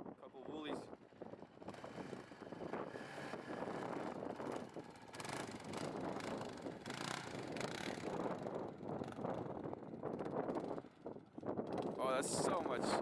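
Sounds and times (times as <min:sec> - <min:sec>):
quad engine revving: 0:01.6 - 0:09.2.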